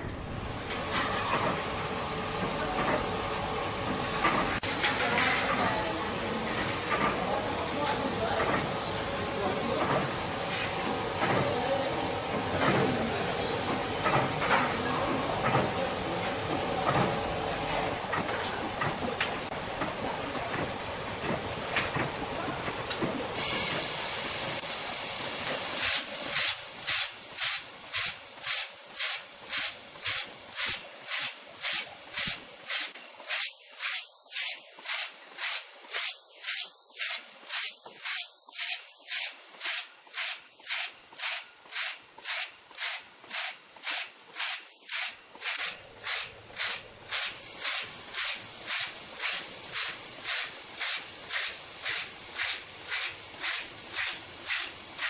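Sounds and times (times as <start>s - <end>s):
machinery hissing rhythmically: 46.0s - 55.0s.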